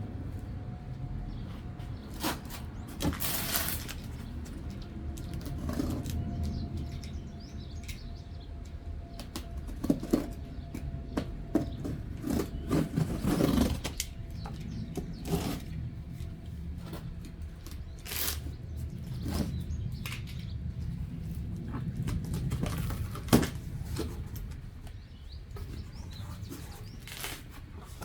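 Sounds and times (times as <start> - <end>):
cardboard box rustling and scraping: 2.0 - 4.4, 5.3 - 6.3, 11.5 - 15.8, 21.5 - 28.0.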